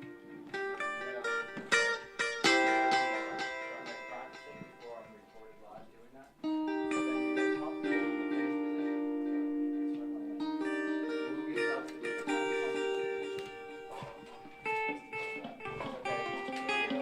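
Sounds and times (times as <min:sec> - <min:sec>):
guitar music: 0:00.0 - 0:17.0.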